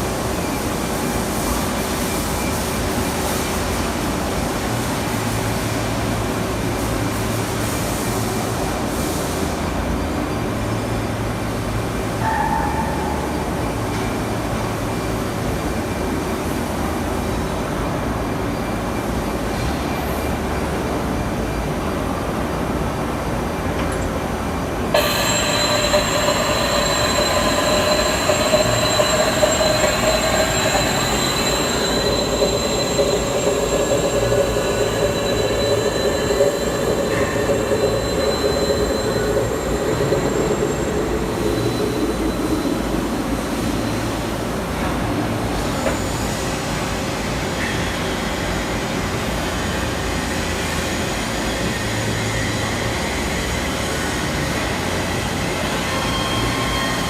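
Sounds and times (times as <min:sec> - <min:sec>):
machining center running: 0:24.9 - 0:45.0
high-pitched whine: 0:25.0 - 0:44.4.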